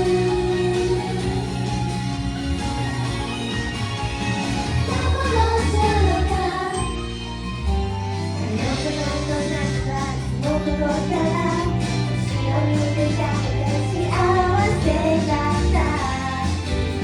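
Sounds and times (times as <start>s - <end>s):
pop band backing: 0.0s - 17.0s
woman singing: 4.9s - 6.9s, 8.4s - 16.8s.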